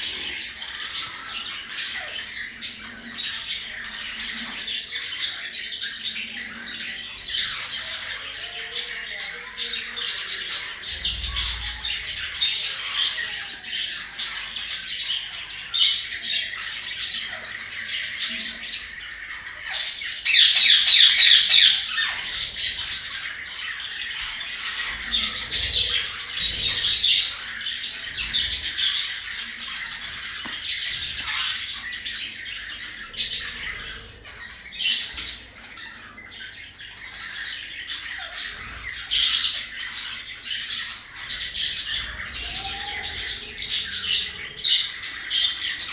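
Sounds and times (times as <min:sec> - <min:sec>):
budgerigars chattering: 0:00.0 - 0:45.9
parrot squawking: 0:20.2 - 0:22.3, 0:41.5 - 0:45.9.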